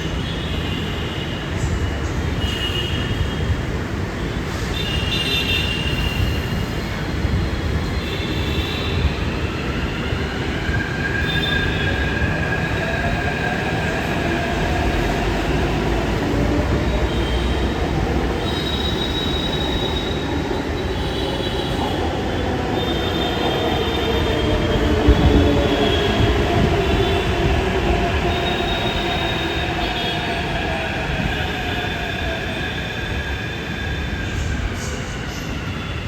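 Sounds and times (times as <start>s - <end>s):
metro train rumbling on rails: 0.0s - 36.0s
high wheel squeal: 16.8s - 36.0s.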